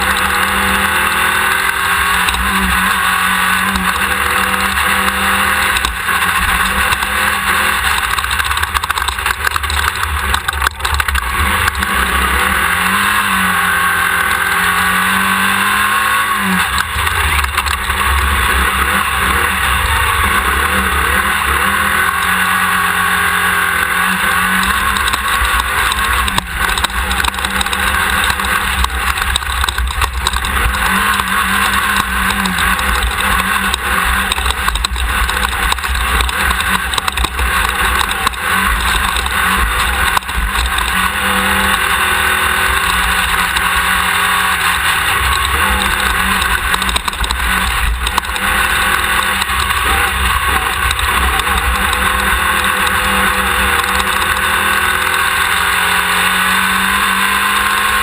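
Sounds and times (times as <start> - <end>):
race car engine running hard: 0.0 - 58.0.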